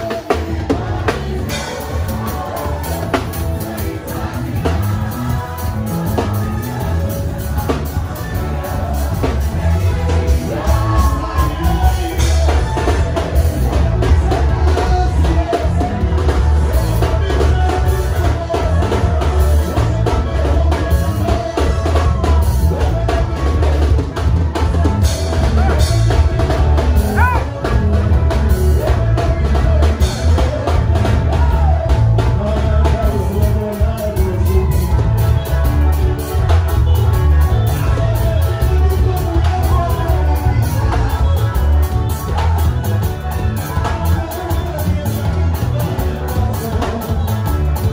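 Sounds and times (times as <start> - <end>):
band music with drums and bass: 0.0 - 47.9
person singing: 0.0 - 47.9.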